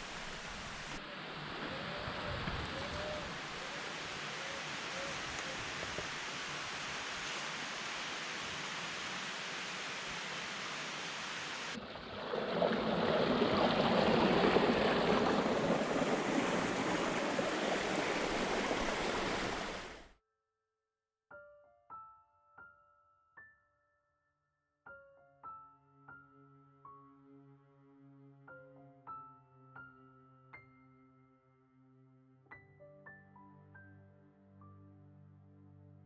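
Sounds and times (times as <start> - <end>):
steady rushing noise: 12.5 - 20.0.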